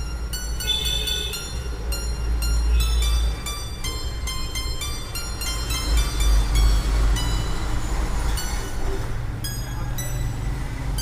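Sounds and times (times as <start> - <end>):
phone ringtone high-pitched notes: 0.0 - 11.0.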